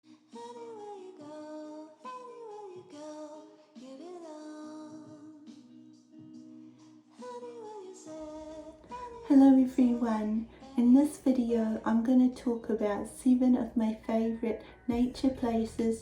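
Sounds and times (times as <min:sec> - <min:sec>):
woman singing: 0:00.2 - 0:16.0.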